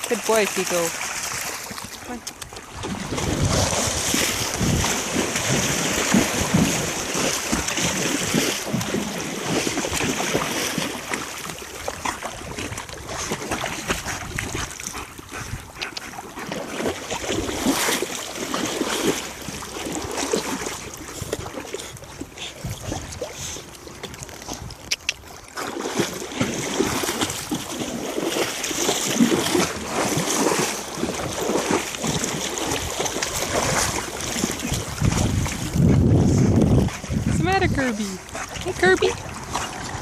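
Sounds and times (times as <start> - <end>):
water splashing and sloshing: 0.0 - 40.0
wind buffeting microphone: 2.7 - 10.3, 12.0 - 16.1, 20.9 - 23.6, 31.0 - 40.0.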